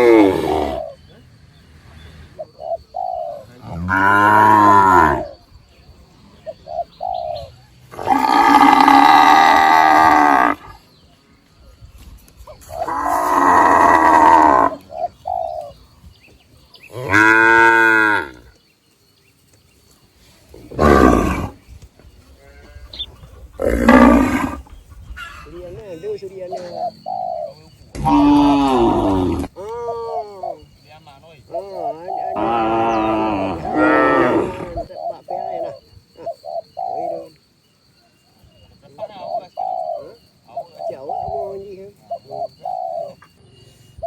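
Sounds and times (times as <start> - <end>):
faint bird chirps: 4.4 - 9.1, 21.6 - 33.9, 34.5 - 44.0
cattle mooing: 12.8 - 14.8, 23.6 - 24.6, 32.3 - 34.9.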